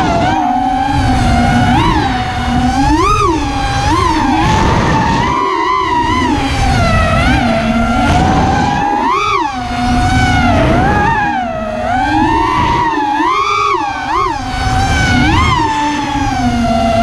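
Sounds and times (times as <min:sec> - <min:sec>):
wind noise: 0:00.0 - 0:13.3, 0:13.9 - 0:17.0
drone motors whining: 0:00.0 - 0:17.0.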